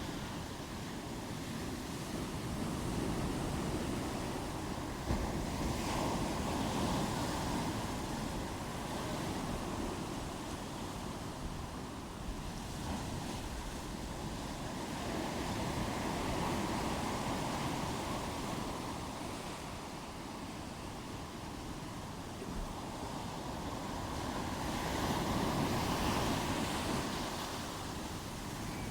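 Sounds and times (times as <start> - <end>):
ocean waves breaking on shore: 0.0 - 28.9.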